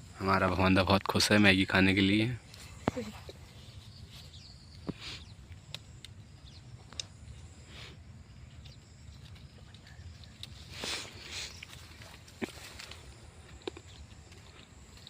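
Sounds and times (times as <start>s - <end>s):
faint sharp clicks: 4.8s - 6.2s, 6.9s - 7.2s.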